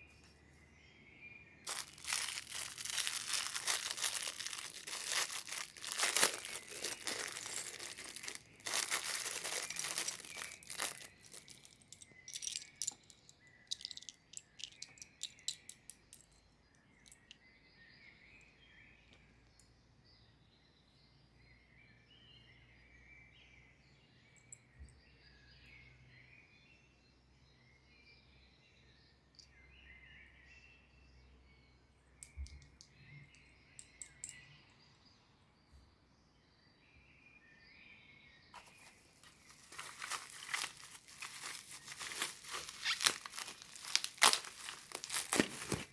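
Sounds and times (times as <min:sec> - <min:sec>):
birds chirping: 0:00.0 - 0:26.7, 0:31.6 - 0:35.4, 0:37.8 - 0:45.9
packaging crinkling and tearing: 0:01.7 - 0:13.0, 0:13.7 - 0:16.3, 0:38.6 - 0:45.9
plastic toy pieces clicking: 0:01.7 - 0:16.4.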